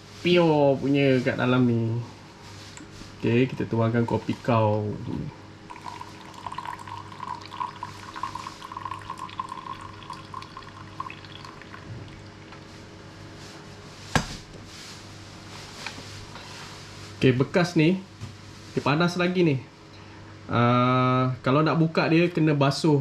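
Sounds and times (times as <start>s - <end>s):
coffee pouring into a glass: 5.7s - 12.6s.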